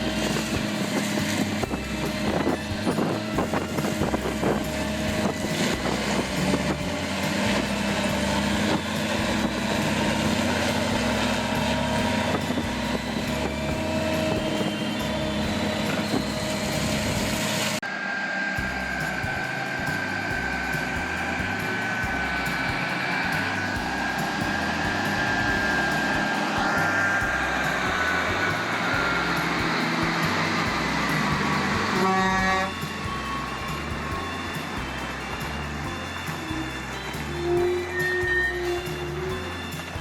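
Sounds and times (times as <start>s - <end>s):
heavy machinery engine running: 0.0s - 40.0s.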